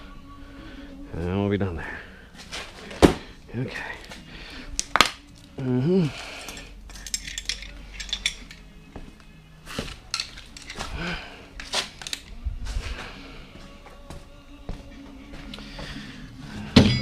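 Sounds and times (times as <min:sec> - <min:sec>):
metal hand tools clinking: 0:06.2 - 0:08.7, 0:10.0 - 0:11.0.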